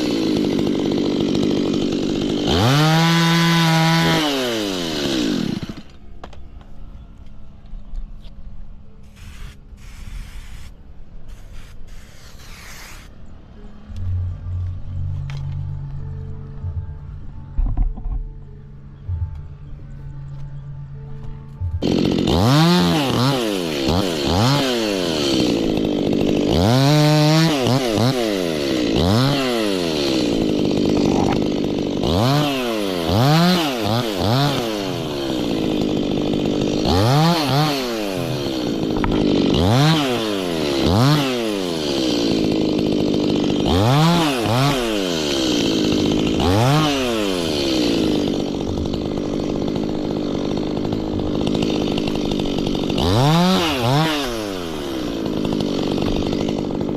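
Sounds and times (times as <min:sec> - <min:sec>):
chainsaw revving: 0:00.0 - 0:06.0, 0:11.3 - 0:13.1, 0:21.8 - 0:56.9.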